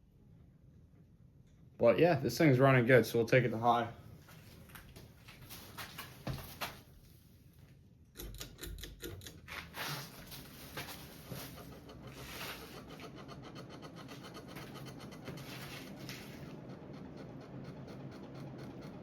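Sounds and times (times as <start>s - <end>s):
ceiling fan air rush: 9.7s - 19.0s
rapid rattling ticks: 11.6s - 15.4s, 16.5s - 19.0s.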